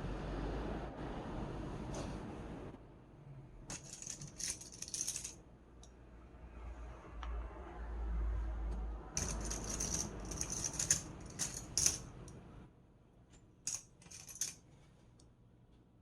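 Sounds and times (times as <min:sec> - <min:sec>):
plastic keyboard parts rattling: 0:03.7 - 0:05.4, 0:09.2 - 0:12.2, 0:13.7 - 0:14.6.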